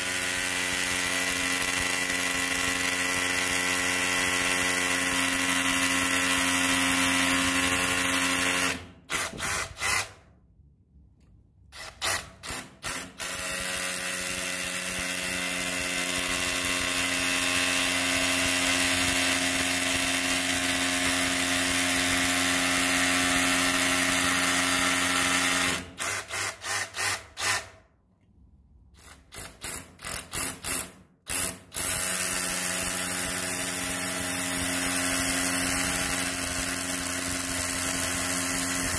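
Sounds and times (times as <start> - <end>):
rotary hammer motor running: 11.8 - 27.7, 31.4 - 38.9.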